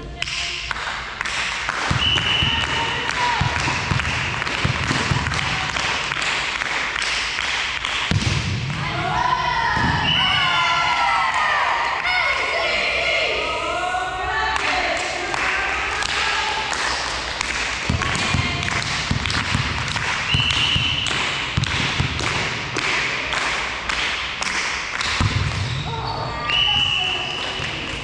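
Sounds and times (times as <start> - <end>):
volleyball hits and thuds: 1.8 - 6.2, 8.0 - 9.0, 9.7 - 10.3, 17.8 - 23.2, 24.4 - 25.9
whistle blast: 1.9 - 2.7, 20.3 - 21.1, 25.8 - 27.8.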